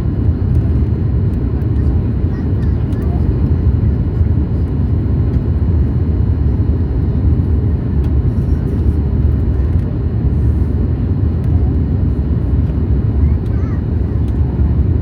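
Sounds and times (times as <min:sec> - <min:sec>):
aircraft cabin engine rumble: 0:00.0 - 0:15.0.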